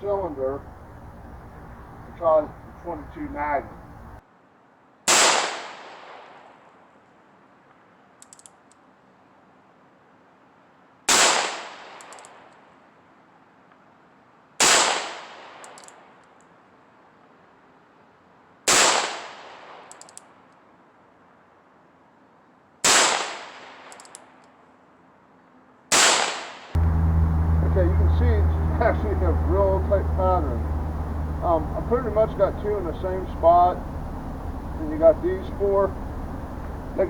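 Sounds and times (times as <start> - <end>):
light clicks: 8.2 - 8.8.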